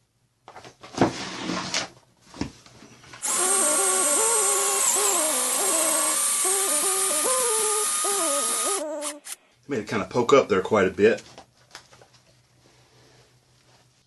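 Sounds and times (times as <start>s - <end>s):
electric drill boring into book: 3.2s - 9.4s.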